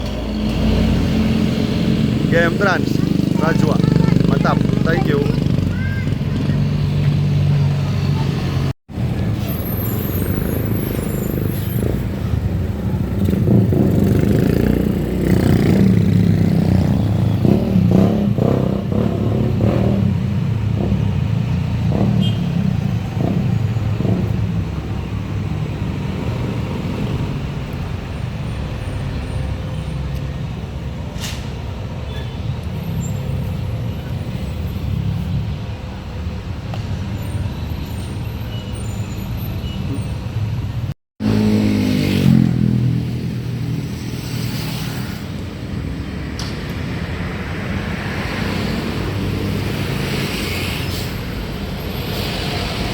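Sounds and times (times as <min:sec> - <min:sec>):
bus engine running: 0:00.0 - 0:17.4
road traffic noise: 0:00.0 - 0:52.9.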